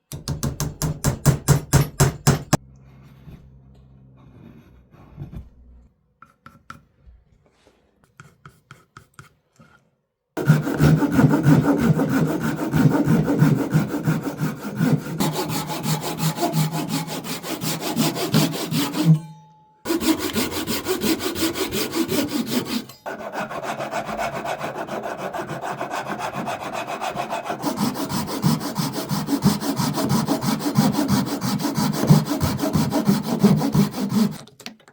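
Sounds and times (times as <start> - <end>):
hand saw cutting wood: 10.4 - 19.3, 19.9 - 34.4.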